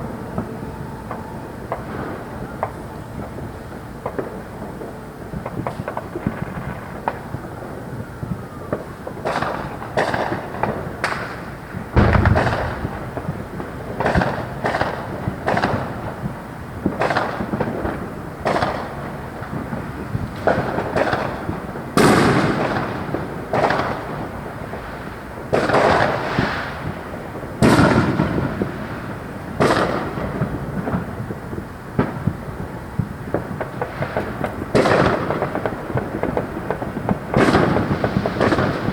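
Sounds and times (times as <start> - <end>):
fireworks bangs and booms: 0.0 - 38.9.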